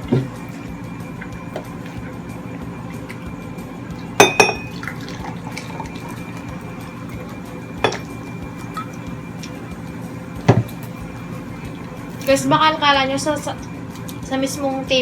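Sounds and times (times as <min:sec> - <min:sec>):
steady low hum: 0:00.0 - 0:15.0
utensils clinking against dishes: 0:04.2 - 0:06.0, 0:07.8 - 0:09.5.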